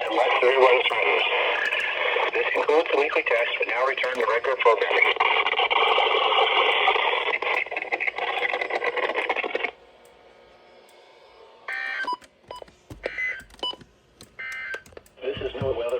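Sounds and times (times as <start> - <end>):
radio noise hiss: 0.0 - 9.8, 15.2 - 15.9.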